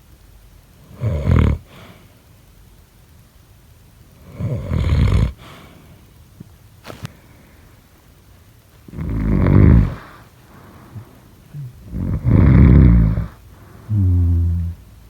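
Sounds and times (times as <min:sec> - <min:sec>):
heavy rattling snores: 0:00.8 - 0:02.0, 0:04.2 - 0:05.8, 0:08.8 - 0:15.0.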